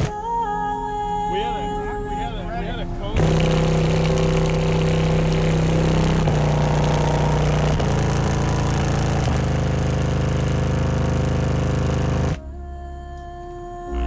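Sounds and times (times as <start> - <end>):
distorted subwoofer bass tones: 3.2 - 12.6.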